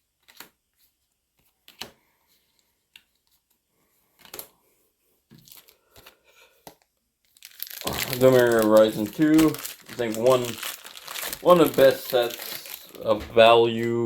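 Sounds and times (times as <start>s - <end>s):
cards and foil wrapper rustling: 5.4s - 14.0s.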